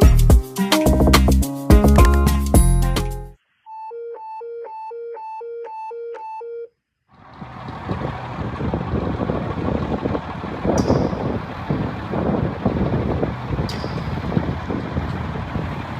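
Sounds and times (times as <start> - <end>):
low engine rumble: 7.1 - 15.9
vehicle and road noise: 7.1 - 15.9.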